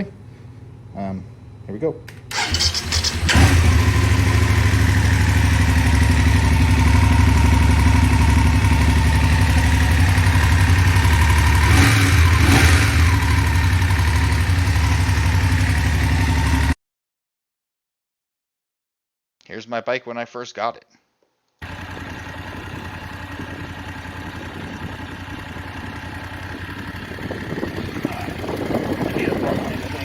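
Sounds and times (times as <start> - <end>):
motorcycle engine idling: 2.3 - 16.8, 21.6 - 30.0.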